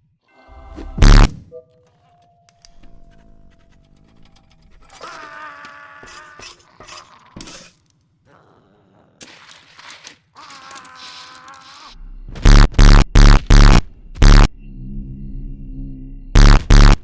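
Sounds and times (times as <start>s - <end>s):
buzzing electronic whine: 1.0s - 1.3s, 12.3s - 17.0s.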